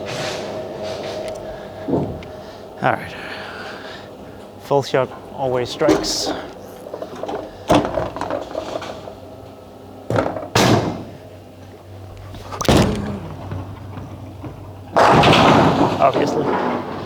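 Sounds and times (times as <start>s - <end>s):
bowling balls thudding: 0.0s - 2.8s, 3.6s - 17.0s
steady low hum: 0.0s - 16.0s
bowling pins crashing: 5.1s - 9.3s, 10.0s - 17.0s.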